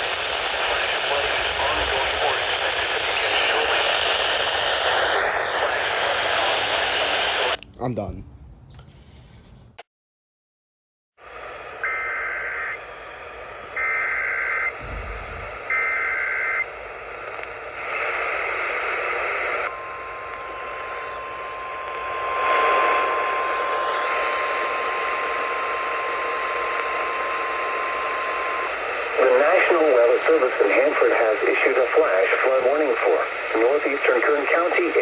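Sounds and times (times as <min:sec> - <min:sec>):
radio hiss: 0:00.0 - 0:08.1, 0:11.2 - 0:35.0
steady alarm tone: 0:11.7 - 0:16.9, 0:19.7 - 0:29.2.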